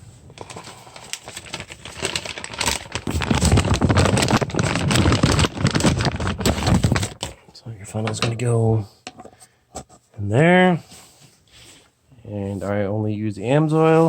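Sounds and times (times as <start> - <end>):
clattering and rustling of objects: 0.0 - 10.2.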